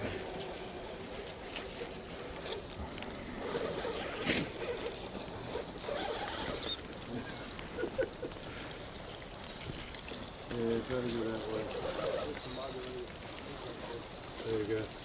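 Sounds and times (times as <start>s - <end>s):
small electric motor running: 1.4s - 7.8s, 9.5s - 9.8s, 11.4s - 12.9s.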